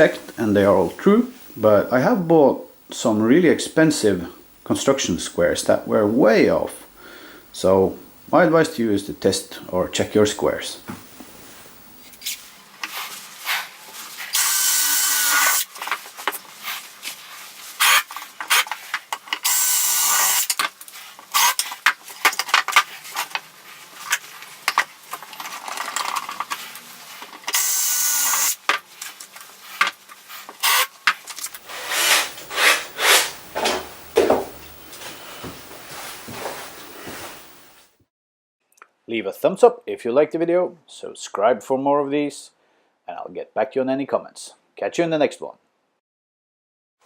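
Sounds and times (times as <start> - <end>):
hissing rasping bursts: 19.4 - 20.5, 30.6 - 37.9.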